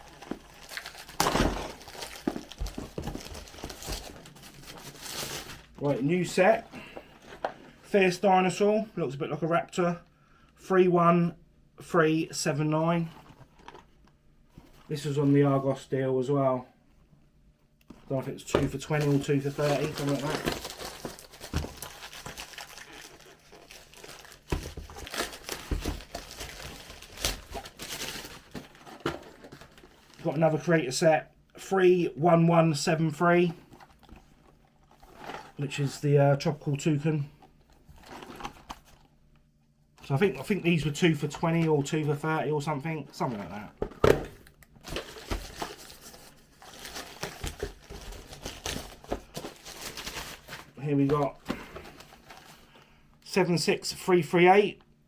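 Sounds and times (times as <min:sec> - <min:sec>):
packaging rustling and crinkling: 0:00.0 - 0:07.8, 0:18.6 - 0:30.6, 0:33.4 - 0:36.0, 0:37.4 - 0:39.1, 0:43.0 - 0:52.8.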